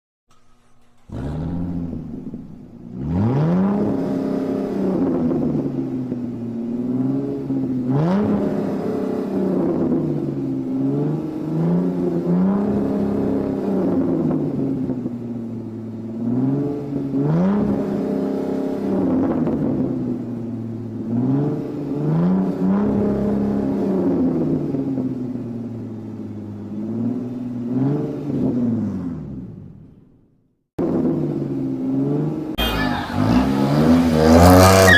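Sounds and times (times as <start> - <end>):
car engine revving: 0.3 - 15.0, 30.8 - 34.9.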